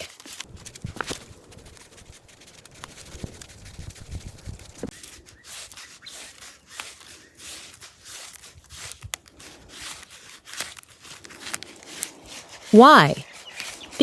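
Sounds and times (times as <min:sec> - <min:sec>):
twine rubbing as wound: 0:00.5 - 0:04.9.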